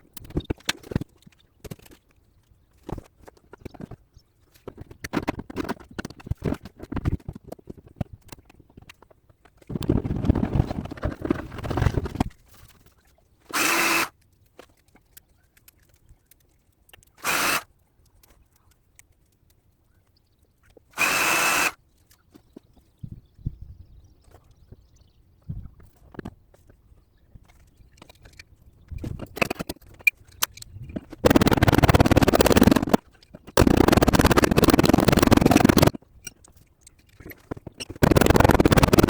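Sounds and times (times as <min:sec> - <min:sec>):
power tool bursts: 0:13.5 - 0:14.1, 0:17.2 - 0:17.7, 0:21.0 - 0:21.8, 0:33.6 - 0:35.9.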